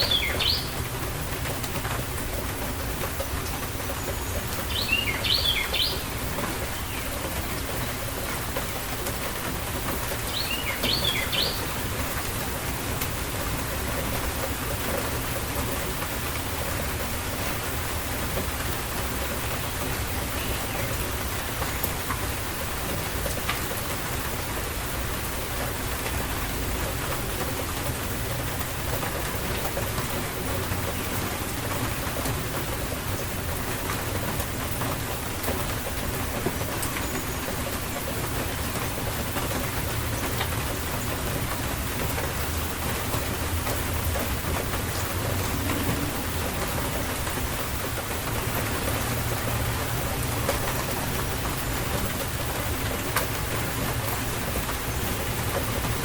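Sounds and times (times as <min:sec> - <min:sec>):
bird chirping: 0:00.0 - 0:00.7, 0:04.7 - 0:06.0, 0:10.3 - 0:11.6
steady rain: 0:00.0 - 0:56.0.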